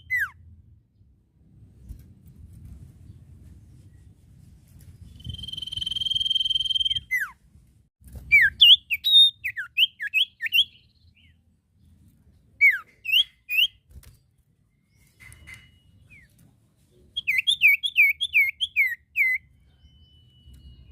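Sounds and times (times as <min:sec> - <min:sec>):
bird singing: 0:00.0 - 0:01.0, 0:05.0 - 0:07.4, 0:08.3 - 0:11.9, 0:12.6 - 0:13.8, 0:17.1 - 0:20.9.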